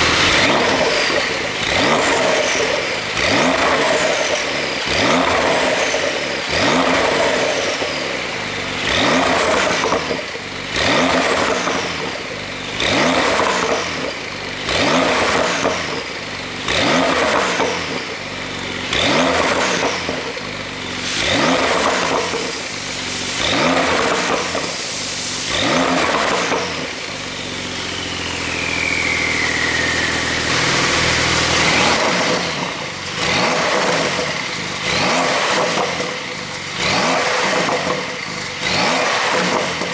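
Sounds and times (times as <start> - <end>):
car engine revving: 0.0 - 39.9
exhaust overrun pops: 20.9 - 36.2.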